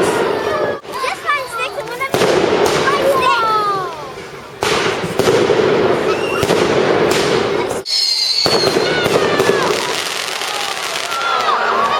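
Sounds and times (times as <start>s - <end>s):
fireworks crackling and popping: 0.0s - 11.9s
high firework whistle: 6.0s - 6.7s, 7.8s - 11.5s.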